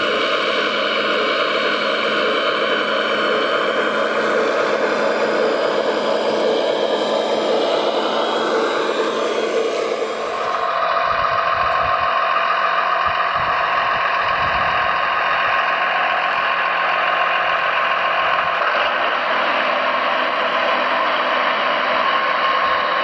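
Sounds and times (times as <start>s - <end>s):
model vehicle electric whine: 0.0s - 12.1s.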